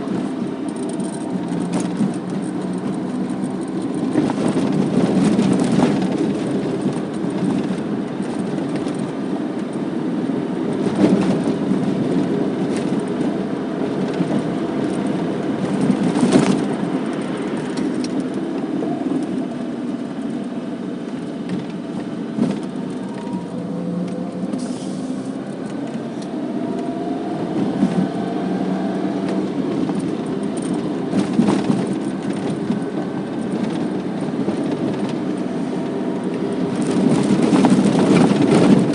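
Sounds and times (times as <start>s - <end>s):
engine and tyre rumble: 0.0s - 38.9s
faint rising engine tone: 22.6s - 29.6s.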